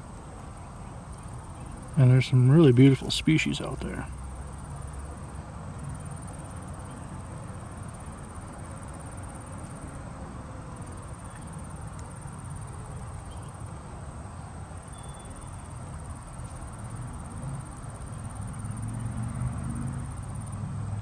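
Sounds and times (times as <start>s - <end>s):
faint short chirps: 14.9s - 15.5s.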